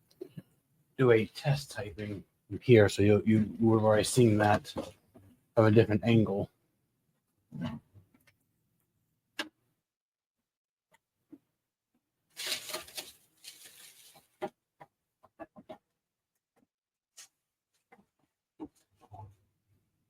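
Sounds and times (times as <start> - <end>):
rustling and scraping of packing: 12.4 - 14.4.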